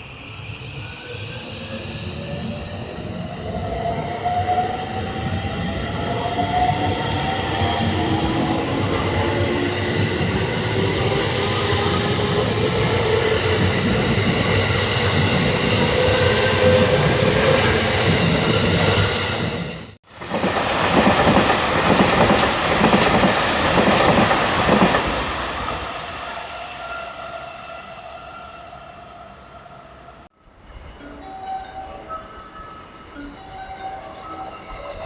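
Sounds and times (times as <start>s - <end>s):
train wheels rumbling on rail: 0.1s - 27.5s.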